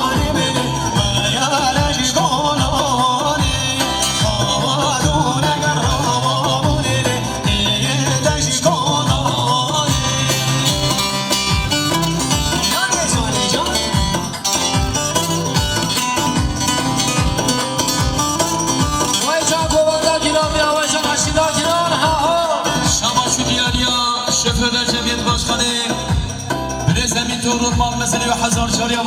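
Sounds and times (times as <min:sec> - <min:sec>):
loud dance music: 0:00.0 - 0:29.0.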